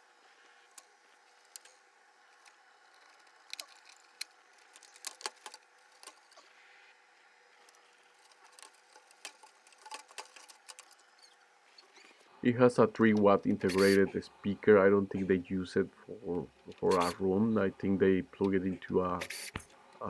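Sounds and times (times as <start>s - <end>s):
low steady hiss: 0.0s - 20.0s
plastic and metal parts clicking: 2.4s - 6.4s, 7.6s - 11.1s, 13.7s - 14.0s.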